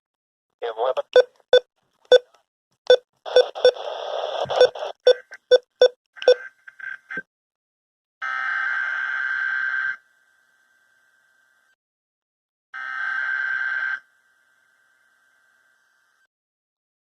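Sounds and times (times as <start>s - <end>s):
electronic bleeps and clicks: 4.4s - 6.4s.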